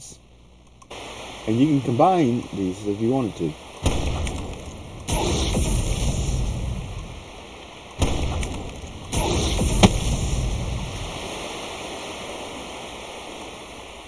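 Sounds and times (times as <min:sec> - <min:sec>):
rushing water-like noise: 0:06.7 - 0:14.0
sharp knock: 0:09.8 - 0:10.1.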